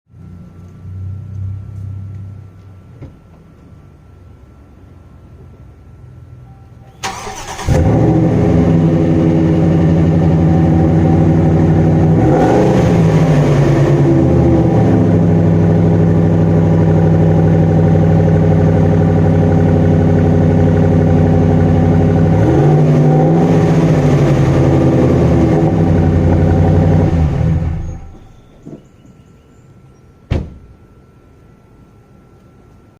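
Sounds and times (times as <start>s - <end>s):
truck engine idling and revving: 0.1s - 29.6s.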